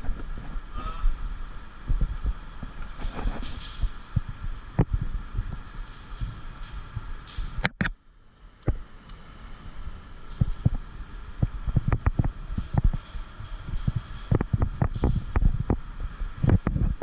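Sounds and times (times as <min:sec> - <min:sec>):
thumps and rubbing on camera microphone: 0:02.0 - 0:03.6.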